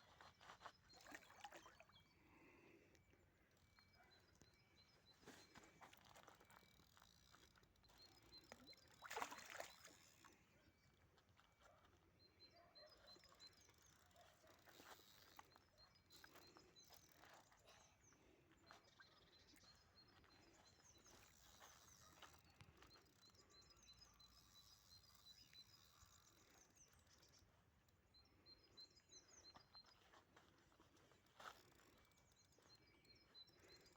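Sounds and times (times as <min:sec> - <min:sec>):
faint high chirps: 0:03.4 - 0:10.7.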